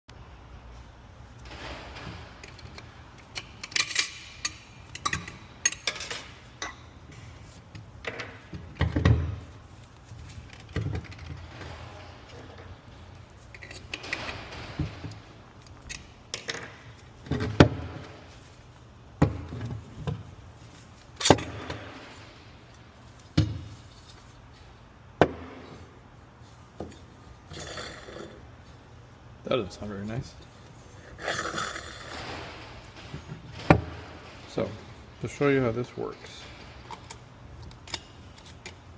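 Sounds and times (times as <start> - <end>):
metal parts clinking and rattling: 1.4 - 9.0.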